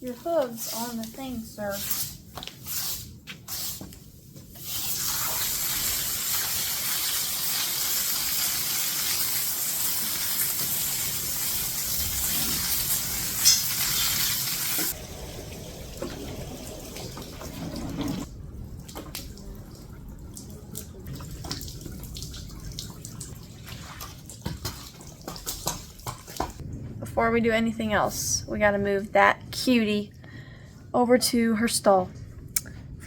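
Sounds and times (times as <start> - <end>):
water running with a hiss: 4.6 - 18.3.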